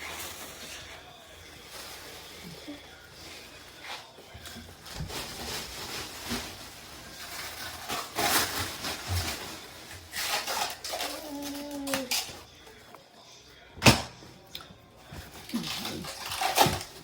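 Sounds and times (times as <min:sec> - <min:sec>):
rustling and rubbing of handling: 0:00.0 - 0:12.9.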